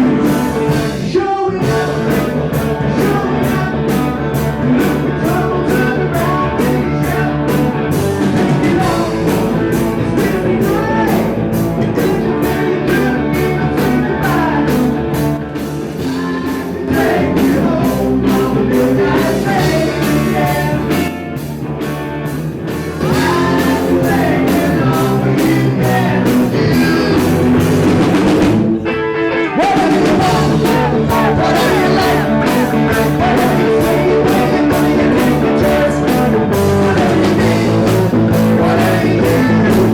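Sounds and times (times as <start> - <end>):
person singing: 0.0 - 15.0, 15.9 - 21.3, 23.0 - 27.9, 28.9 - 39.9
drum kit with cymbal beat: 0.0 - 28.8, 29.6 - 39.9
electric guitar: 0.0 - 39.9.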